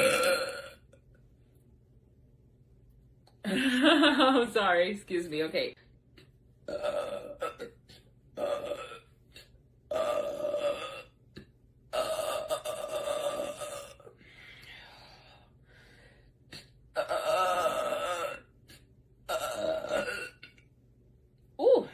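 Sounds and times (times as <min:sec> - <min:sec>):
woman belching: 0:00.0 - 0:01.0, 0:06.6 - 0:09.1, 0:09.9 - 0:11.2, 0:11.9 - 0:14.1, 0:17.0 - 0:18.5, 0:19.3 - 0:20.6.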